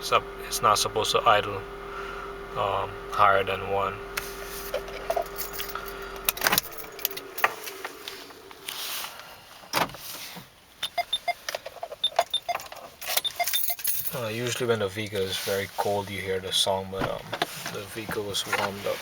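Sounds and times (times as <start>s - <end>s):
car engine idling: 0.0s - 10.0s
keys jangling: 5.2s - 7.8s, 12.2s - 14.2s.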